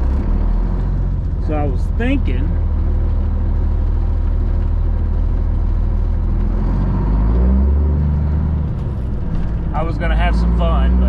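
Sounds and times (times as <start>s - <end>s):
diesel truck engine idling: 0.0s - 6.4s.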